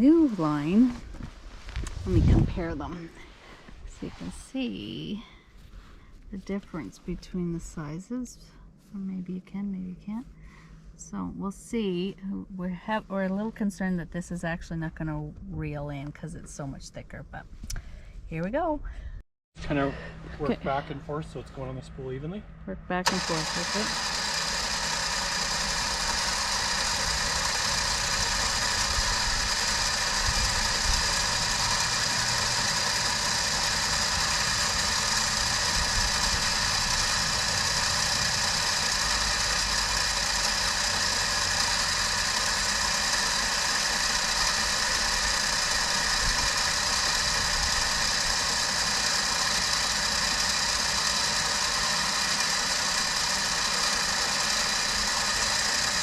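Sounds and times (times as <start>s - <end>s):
electric winch running: 0.0s - 6.0s, 19.6s - 56.0s.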